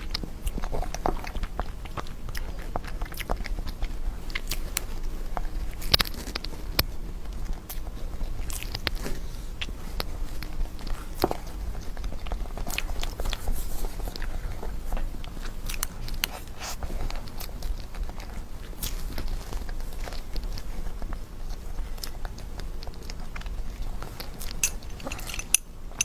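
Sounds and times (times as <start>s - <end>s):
person biting and chewing: 0.0s - 20.6s.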